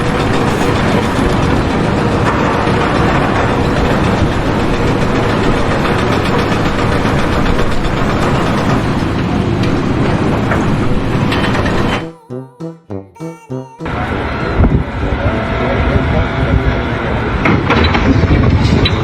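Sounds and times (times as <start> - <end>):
loud machinery running: 0.0 - 12.1.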